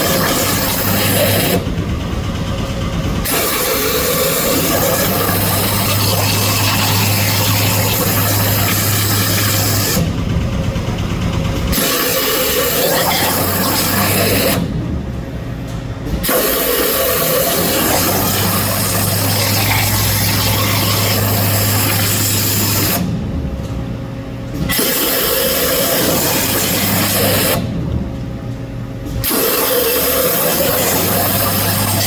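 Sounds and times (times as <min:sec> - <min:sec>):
high-pressure water jet hissing: 0:00.0 - 0:01.6, 0:03.3 - 0:10.1, 0:11.8 - 0:14.6, 0:16.2 - 0:23.0, 0:24.7 - 0:27.6, 0:29.2 - 0:32.0
low pump hum: 0:00.0 - 0:32.0.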